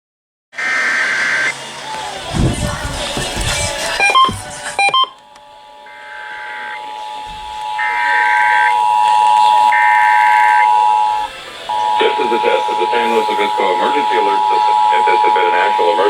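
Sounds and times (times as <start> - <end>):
data tone bursts: 3.6 - 5.2, 5.8 - 16.0
two-tone attention signal: 4.0 - 5.2, 5.8 - 16.0
short beeps: 7.4 - 16.0.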